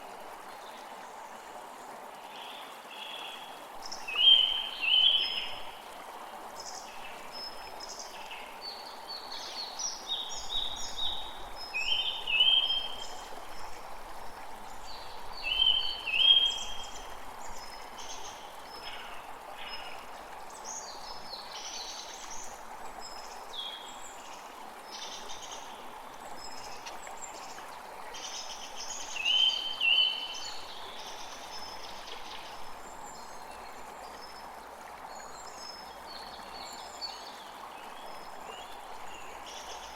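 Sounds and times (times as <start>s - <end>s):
creek water flowing: 0.0s - 39.9s
songbirds singing: 14.7s - 34.5s.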